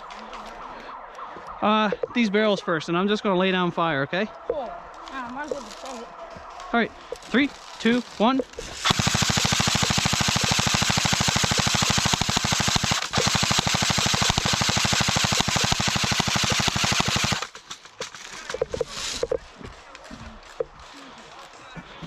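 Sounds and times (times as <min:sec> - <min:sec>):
airsoft gun rapid firing: 0:08.6 - 0:18.2.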